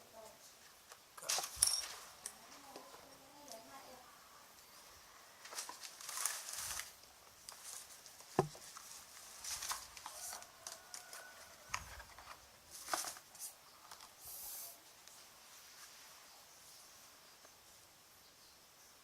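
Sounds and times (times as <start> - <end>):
packaging rustling and scraping: 5.4 - 14.2.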